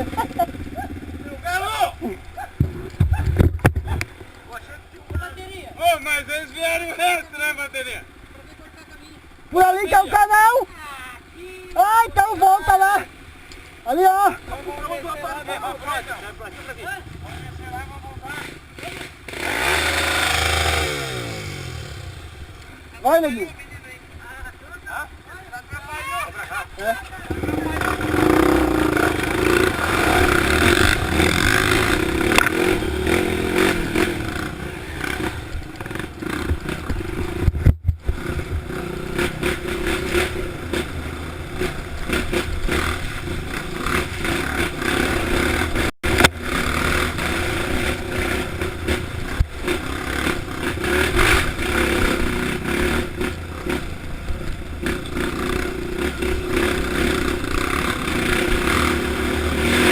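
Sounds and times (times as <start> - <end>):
dirt bike engine running: 0.0 - 1.6, 16.8 - 23.4, 27.3 - 59.9.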